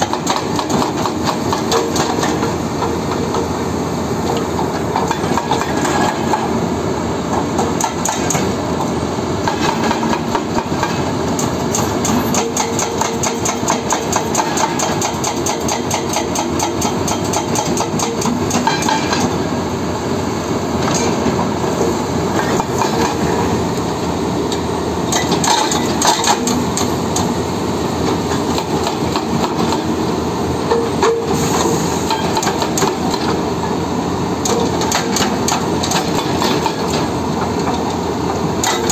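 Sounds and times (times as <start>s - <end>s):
hydraulic breaker hammering rock: 0.0s - 3.0s, 7.6s - 8.6s, 9.4s - 19.4s, 25.1s - 26.9s, 34.4s - 37.1s, 38.6s - 38.9s
excavator diesel engine running: 0.0s - 38.9s.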